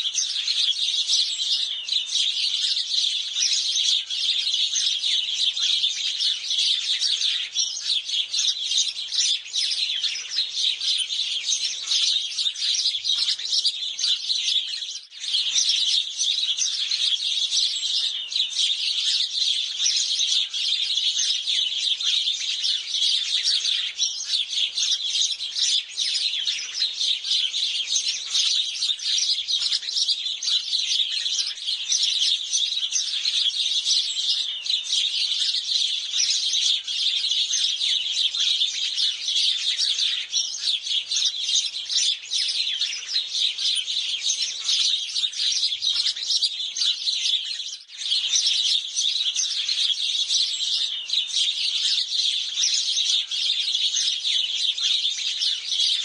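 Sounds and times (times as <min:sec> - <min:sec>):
sparrows chirping: 0:00.0 - 0:56.0.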